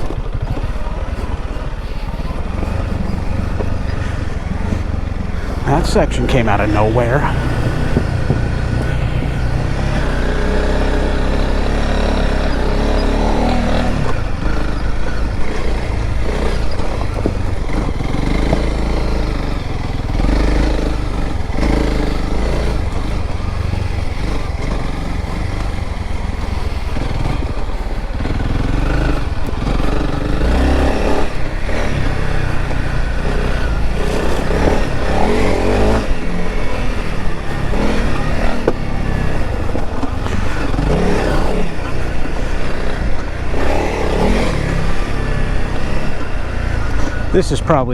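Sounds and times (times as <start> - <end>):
motorcycle engine revving: 0.0 - 47.9
heavy low rumble: 2.4 - 12.2.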